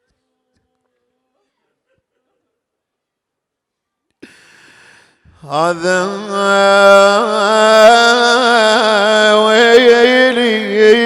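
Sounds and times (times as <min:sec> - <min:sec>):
person singing a long wavering note: 0:05.4 - 0:11.0.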